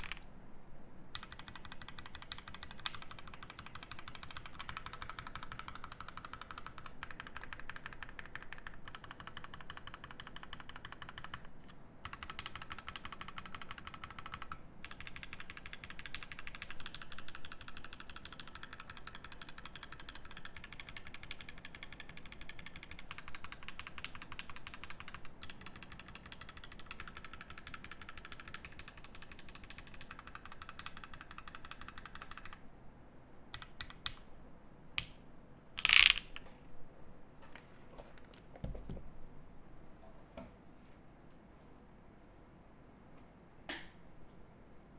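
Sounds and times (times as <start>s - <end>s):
fast typing on mechanical keyboard: 0.0s - 0.2s, 1.2s - 32.6s, 33.5s - 34.2s, 35.8s - 36.3s.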